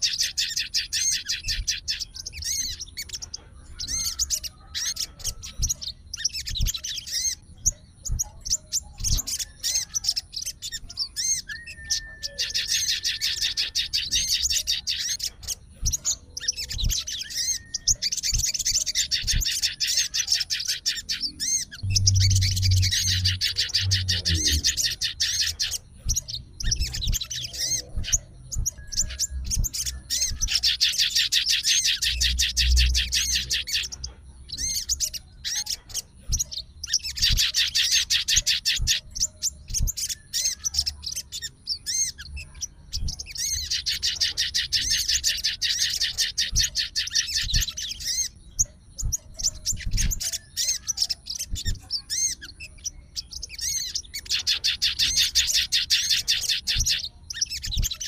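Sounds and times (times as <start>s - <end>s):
songbird chattering trills: 0.0s - 58.0s
soft low thuds: 21.8s - 24.7s.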